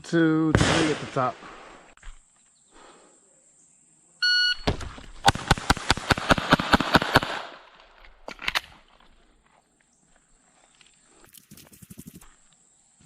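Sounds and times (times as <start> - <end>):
pistol shots: 0.5 - 1.9, 5.2 - 7.6.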